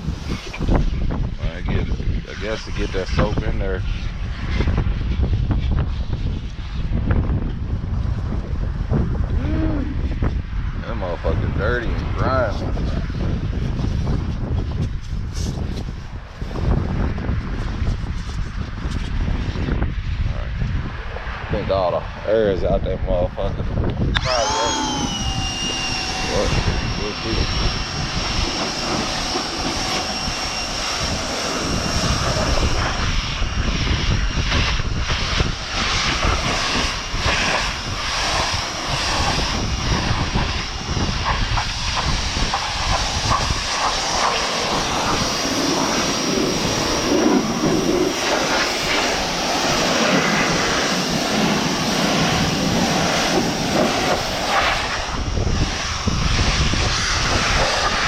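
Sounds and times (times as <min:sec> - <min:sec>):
motor drone: 0:00.0 - 0:19.8, 0:23.7 - 0:58.0
pressure washer spraying water: 0:24.2 - 0:33.2, 0:34.5 - 0:40.6, 0:41.2 - 0:55.2, 0:57.0 - 0:58.0.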